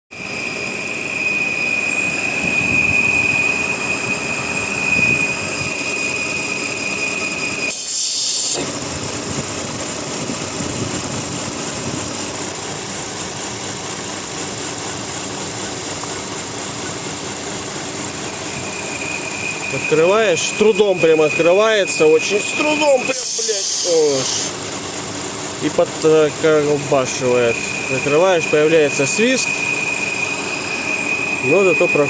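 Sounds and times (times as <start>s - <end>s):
high-pitched whistle: 0.2s - 8.6s, 18.2s - 24.6s, 26.9s - 32.0s
car engine idling: 0.2s - 32.0s.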